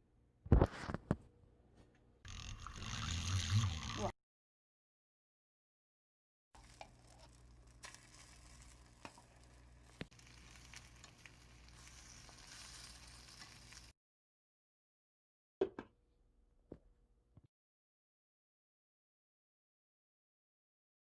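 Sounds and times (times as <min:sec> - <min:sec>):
food sizzling in a hot pan: 0:06.6 - 0:13.9.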